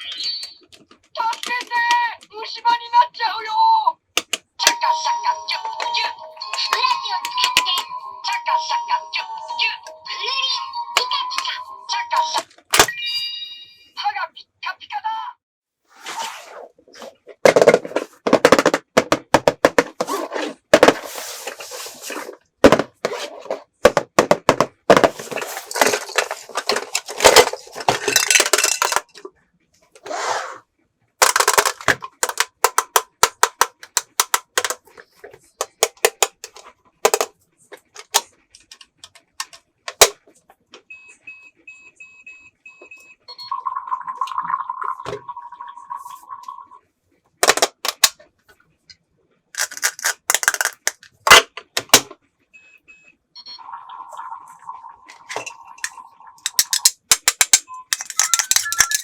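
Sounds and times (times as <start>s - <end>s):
plastic toy pieces clattering: 17.5s - 29.2s, 31.2s - 37.3s, 47.4s - 48.2s, 49.6s - 52.0s, 55.2s - 59.0s
short high electronic beeps: 57.7s - 59.0s.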